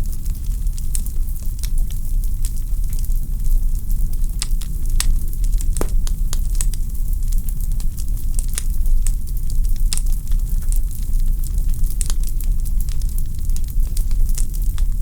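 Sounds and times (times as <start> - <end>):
fire flames rumbling: 0.0 - 15.0
logs crackling and popping: 4.1 - 15.0.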